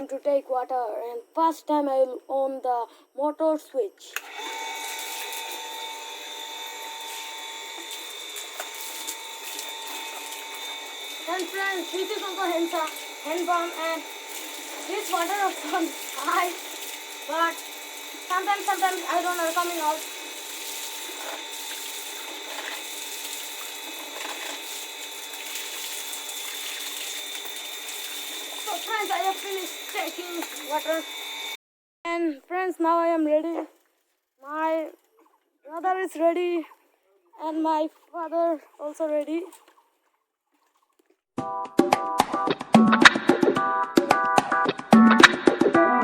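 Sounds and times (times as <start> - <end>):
water pump motor whining: 4.0 - 31.6.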